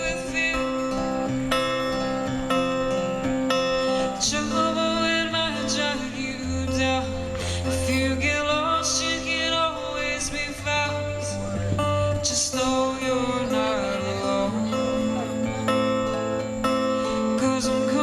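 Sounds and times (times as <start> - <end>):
person singing: 0.0 - 2.8, 3.8 - 18.0
acoustic guitar: 0.0 - 18.0.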